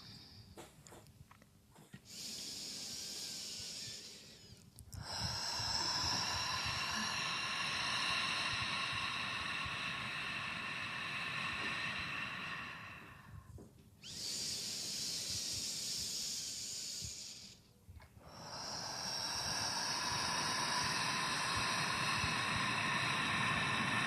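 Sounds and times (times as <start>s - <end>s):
person exhaling forcefully: 5.0s - 17.3s, 18.3s - 24.0s.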